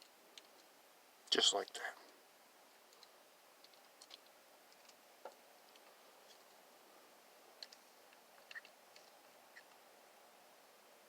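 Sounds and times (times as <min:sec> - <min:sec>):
faint clicks of small parts: 0:00.0 - 0:00.7, 0:01.3 - 0:02.2, 0:02.8 - 0:06.6, 0:07.6 - 0:09.8.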